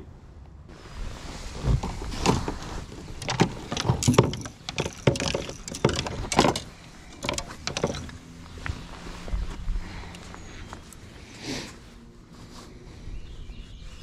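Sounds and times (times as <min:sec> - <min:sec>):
fishing gear knocking and rattling: 0:03.0 - 0:08.4.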